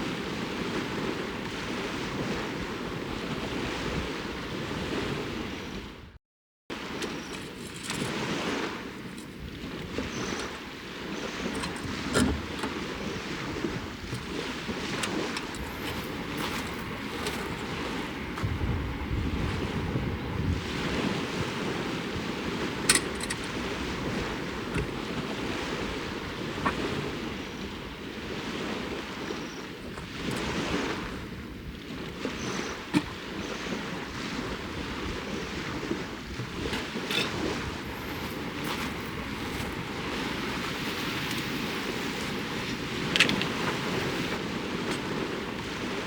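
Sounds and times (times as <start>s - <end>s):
waves washing onto shore: 0.0s - 6.1s, 6.7s - 46.0s
wind buffeting microphone: 0.0s - 6.2s, 6.8s - 46.0s.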